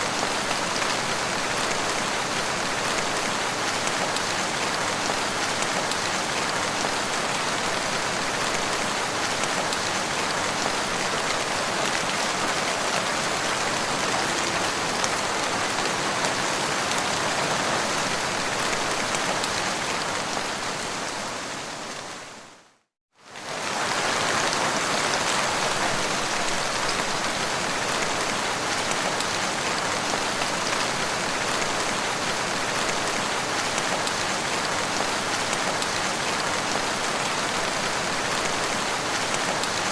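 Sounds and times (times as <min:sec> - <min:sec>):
rain falling on ground: 0:00.0 - 0:39.9.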